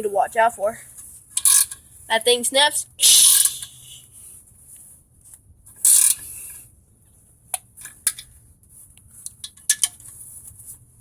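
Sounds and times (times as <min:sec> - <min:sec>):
ratchet wrench clicking: 0:03.1 - 0:03.8.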